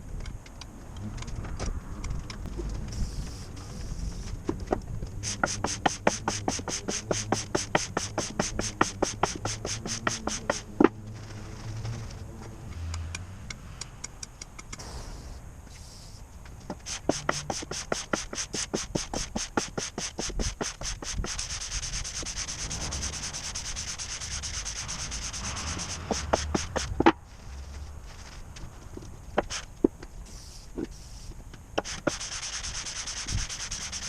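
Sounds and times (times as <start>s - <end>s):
metal rasping on sandpaper: 5.2s - 10.9s, 15.8s - 28.4s, 29.4s - 34.0s.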